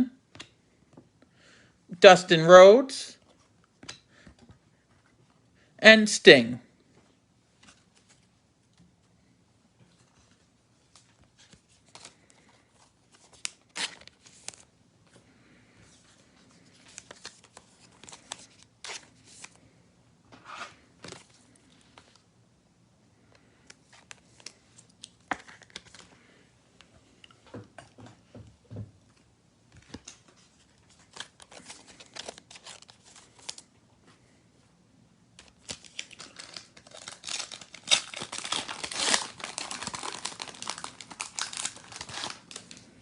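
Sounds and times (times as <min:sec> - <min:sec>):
card pack wrapper tearing: 0:13.2 - 0:14.6, 0:31.1 - 0:33.6, 0:35.4 - 0:42.8.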